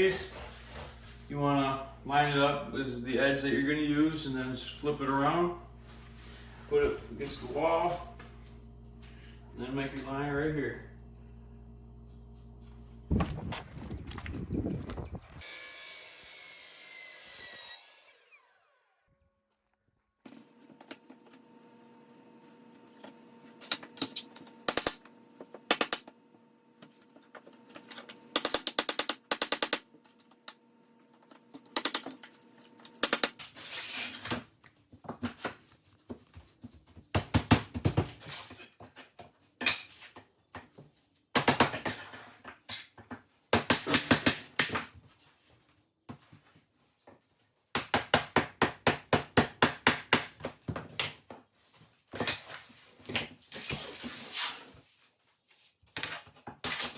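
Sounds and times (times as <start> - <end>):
faint steady hum: 0.2 - 14.5.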